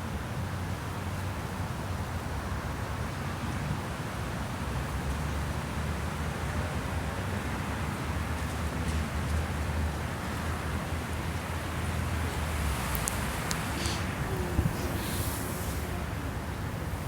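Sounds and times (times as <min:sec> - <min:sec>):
wind buffeting microphone: 0:11.9 - 0:17.0.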